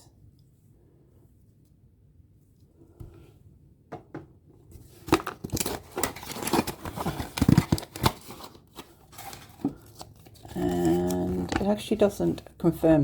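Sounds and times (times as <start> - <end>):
packaging crinkling and rustling: 4.9 - 12.5
packaging clicks: 5.1 - 11.7.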